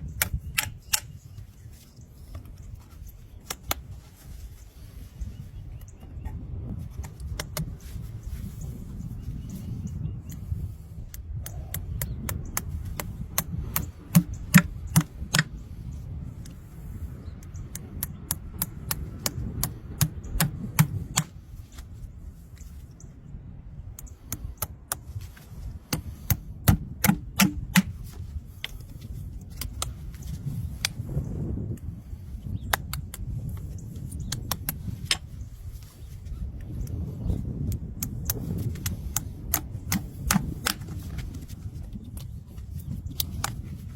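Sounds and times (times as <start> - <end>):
hoof tools clicking and snipping: 0.0 - 1.5, 2.3 - 4.1, 5.8 - 8.0, 10.3 - 15.7, 17.6 - 21.9, 24.0 - 31.0, 32.7 - 35.4, 36.6 - 43.9.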